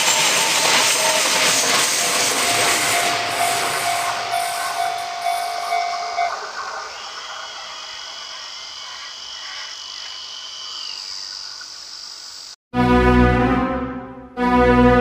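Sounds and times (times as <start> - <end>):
level-crossing warning bell: 0.0 - 7.5
train rolling: 0.0 - 10.1.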